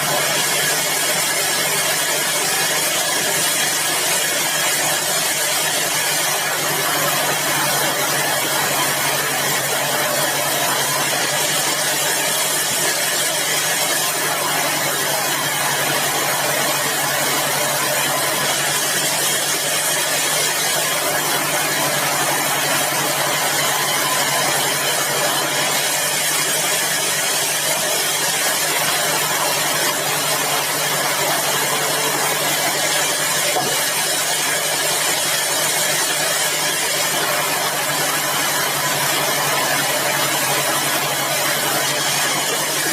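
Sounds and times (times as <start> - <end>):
sawmill machinery drone: 0.0 - 42.9.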